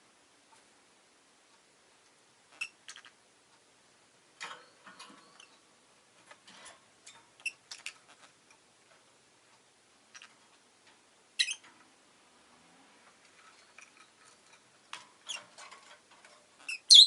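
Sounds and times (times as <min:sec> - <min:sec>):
lovebird chirping and clicking: 0:02.5 - 0:03.2, 0:07.1 - 0:08.4, 0:10.1 - 0:10.4, 0:11.4 - 0:11.7, 0:16.6 - 0:17.0.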